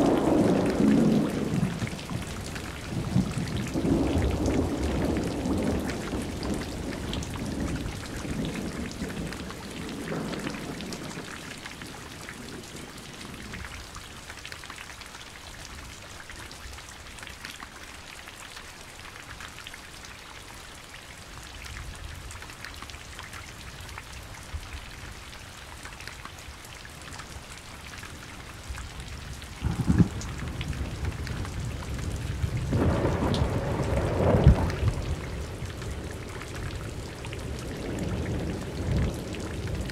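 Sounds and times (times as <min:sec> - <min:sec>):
thunder rumbling: 0:00.0 - 0:11.4, 0:29.2 - 0:39.9
steady rain falling: 0:00.0 - 0:39.9
sharp thunderclap: 0:29.6 - 0:35.8.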